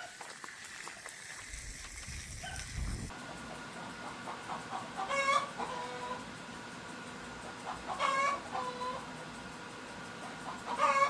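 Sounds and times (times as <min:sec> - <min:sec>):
fowl calling: 0:03.8 - 0:06.2, 0:07.6 - 0:09.1, 0:10.4 - 0:11.0.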